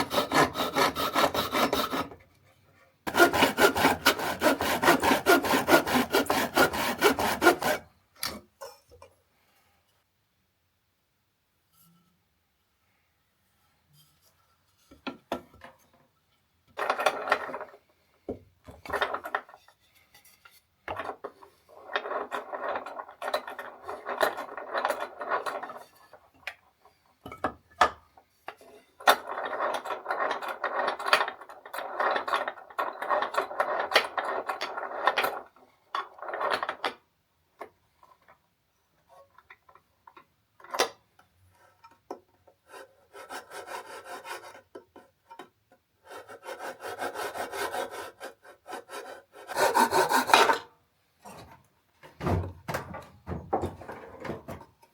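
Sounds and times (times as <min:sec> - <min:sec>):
hand tool scraping wood: 0:00.0 - 0:02.2, 0:03.1 - 0:08.4, 0:42.6 - 0:45.1, 0:46.0 - 0:54.6.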